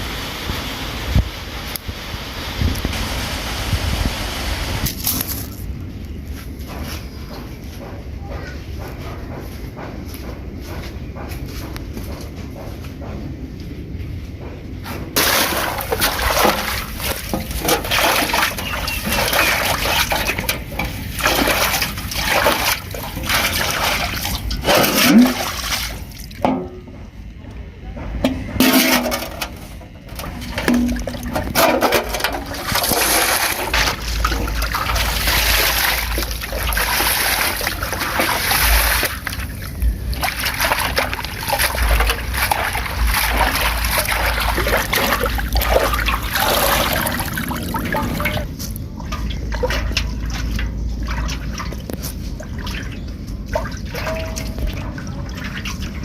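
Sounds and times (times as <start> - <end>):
water trickling and splashing: 15.2 - 26.6, 30.1 - 56.0.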